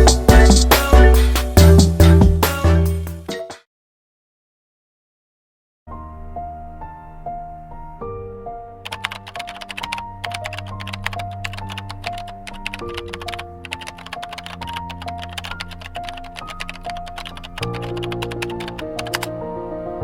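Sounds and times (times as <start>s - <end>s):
slow keyboard melody: 0.0s - 3.3s, 5.9s - 20.0s
keyboard typing clicks: 8.8s - 19.4s.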